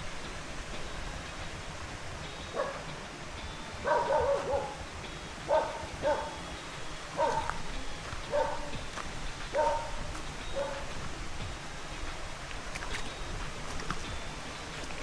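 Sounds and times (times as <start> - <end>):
running water: 0.0 - 15.0
dog barking: 2.5 - 2.9, 3.8 - 4.8, 5.5 - 6.4, 7.1 - 7.6, 8.3 - 8.8, 9.5 - 11.0.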